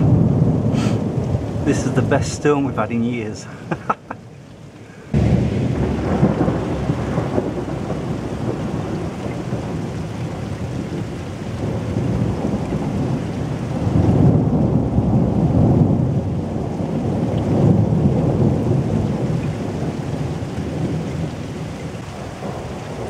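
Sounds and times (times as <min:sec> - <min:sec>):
thunder crack and rolling rumble: 0:00.0 - 0:04.2, 0:05.1 - 0:23.0
steady rain falling: 0:00.0 - 0:23.0.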